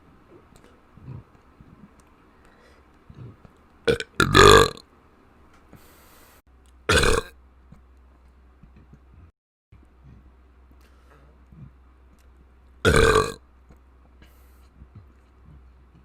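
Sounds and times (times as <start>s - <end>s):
person burping loudly: 3.9s - 4.8s, 6.9s - 7.3s, 12.8s - 13.4s.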